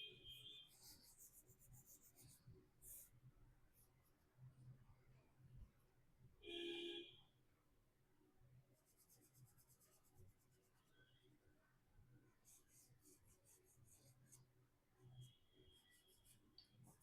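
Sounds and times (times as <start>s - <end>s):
pastel scratching on paper: 0.4s - 3.1s, 8.8s - 11.0s, 12.5s - 14.4s, 15.2s - 17.0s.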